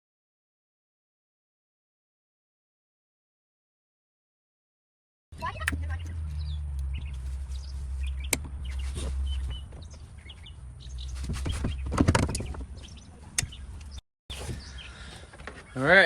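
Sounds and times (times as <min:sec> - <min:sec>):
small birds chirping: 0:05.4 - 0:16.0
sharp clicks and handling clatter: 0:11.0 - 0:15.7.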